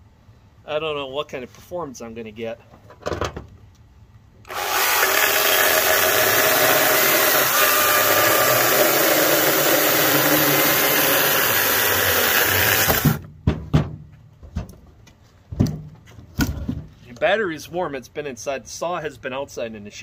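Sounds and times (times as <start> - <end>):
chainsaw cutting a log: 4.5 - 13.2.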